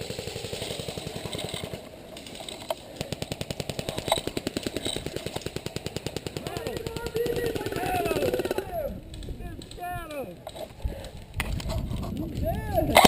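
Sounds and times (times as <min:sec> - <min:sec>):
airsoft guns firing full auto: 0:00.0 - 0:08.8.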